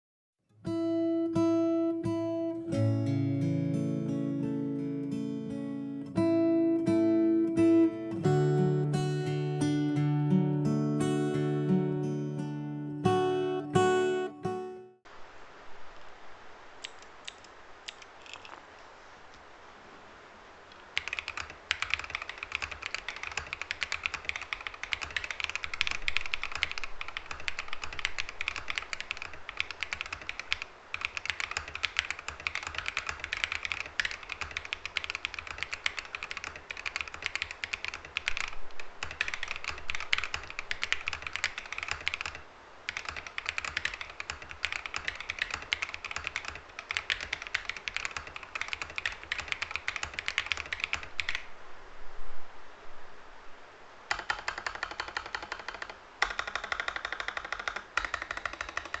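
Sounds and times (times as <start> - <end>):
fast mechanical keyboard typing: 21.0 - 51.5, 54.1 - 59.0.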